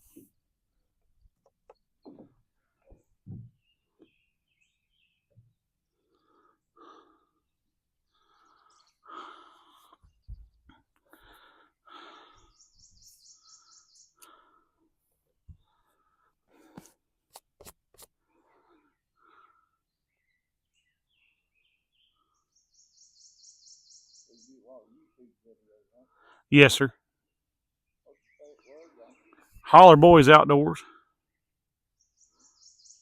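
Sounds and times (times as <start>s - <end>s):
faint birds chirping: 0.0s - 17.3s, 18.0s - 33.0s
heavy congested breathing: 5.8s - 17.1s, 18.1s - 20.0s, 25.9s - 26.5s.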